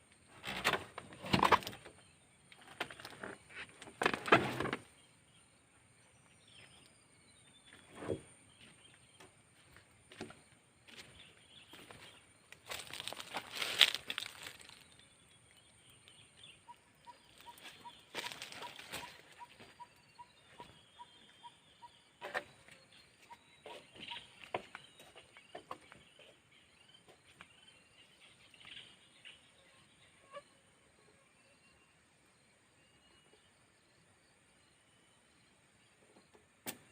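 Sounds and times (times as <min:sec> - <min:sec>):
rustles and clicks: 0:11.8 - 0:14.9.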